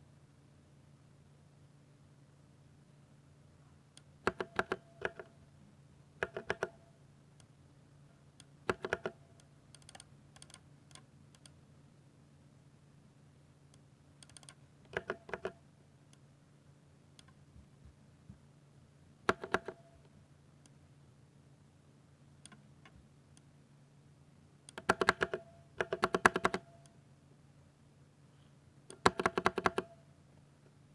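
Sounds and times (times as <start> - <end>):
faint low hum: 0.0 - 30.9
mechanical keyboard typing: 4.3 - 5.2, 6.2 - 6.8, 8.7 - 9.2, 9.8 - 11.5, 14.2 - 15.6, 19.3 - 19.9, 24.7 - 26.7, 28.9 - 29.9.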